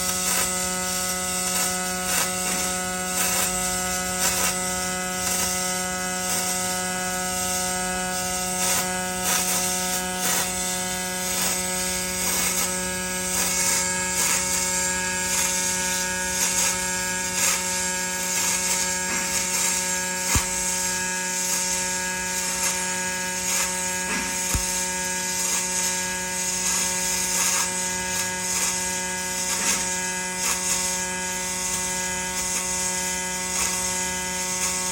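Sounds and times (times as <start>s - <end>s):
arc welding buzz and hiss: 0.0s - 34.9s.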